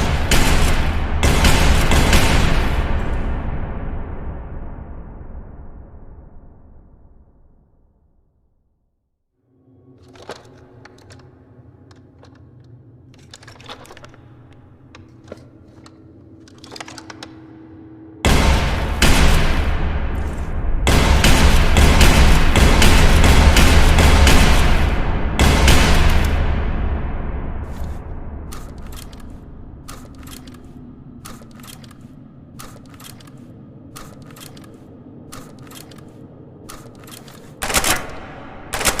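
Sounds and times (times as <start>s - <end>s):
steady low hum: 9.4s - 39.0s
light clicks and rattles: 28.6s - 38.2s.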